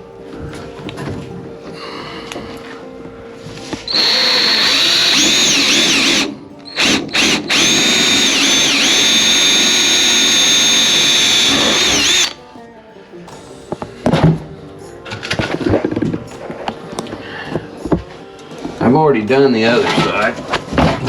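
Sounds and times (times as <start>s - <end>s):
power drill whining: 3.9s - 12.4s.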